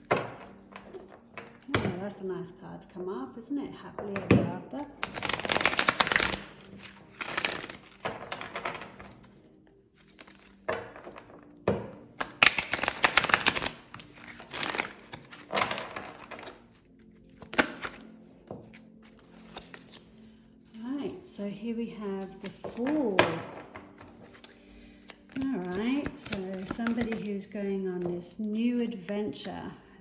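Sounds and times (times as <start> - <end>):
cards being shuffled: 0.1 - 1.6, 5.0 - 9.4, 10.0 - 11.5, 12.2 - 20.4, 22.1 - 29.8.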